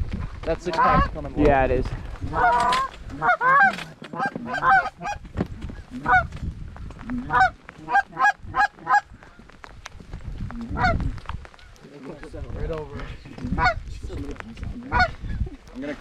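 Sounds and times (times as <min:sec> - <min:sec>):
wind and rain rumble: 0:00.0 - 0:16.0
goose honking: 0:00.7 - 0:01.1, 0:02.2 - 0:06.3, 0:07.1 - 0:09.1, 0:10.6 - 0:11.0, 0:13.4 - 0:13.8, 0:14.8 - 0:15.2.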